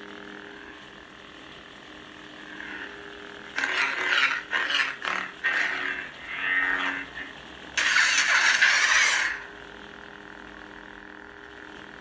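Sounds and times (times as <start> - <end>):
lightsaber blade hum: 2.3 - 9.6.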